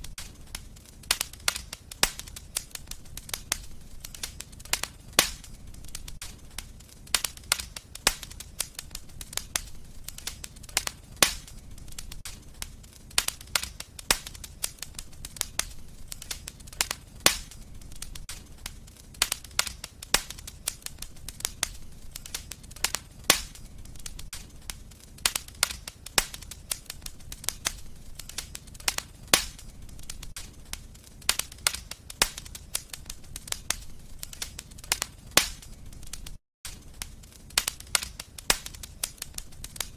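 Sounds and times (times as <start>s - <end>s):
fire crackling and popping: 0.0s - 39.9s
low rumble of flames: 0.0s - 39.9s.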